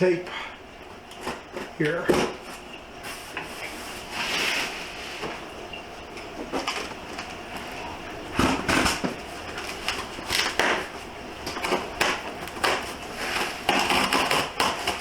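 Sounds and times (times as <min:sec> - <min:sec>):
cardboard scraping and rustling: 0:02.2 - 0:05.4
scissor blade slitting tape: 0:12.0 - 0:15.0.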